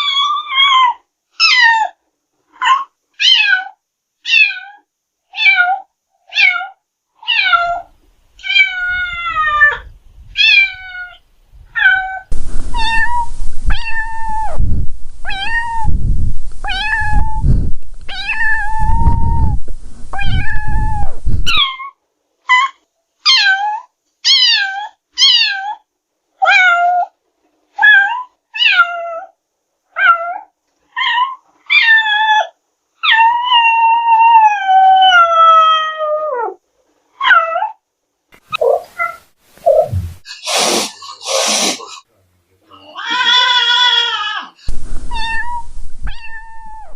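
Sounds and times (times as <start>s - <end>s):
cat meowing: 5.4s - 11.2s, 11.8s - 14.6s, 15.2s - 15.9s, 16.6s - 17.4s, 18.1s - 19.6s, 20.2s - 25.8s, 42.7s - 46.9s
low rumbling noise: 11.5s - 21.5s, 39.6s - 40.4s.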